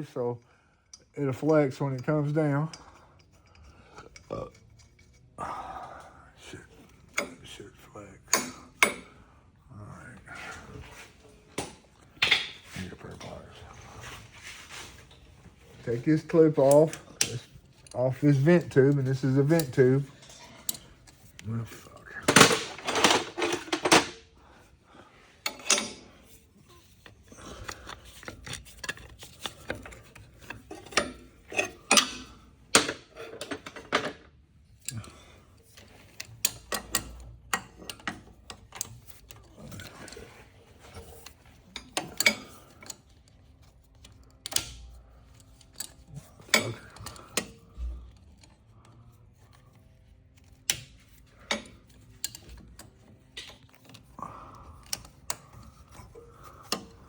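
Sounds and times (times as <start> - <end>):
hand tools clanking on metal: 8.2 - 9.2, 15.8 - 24.2, 25.4 - 43.3, 44.0 - 49.5.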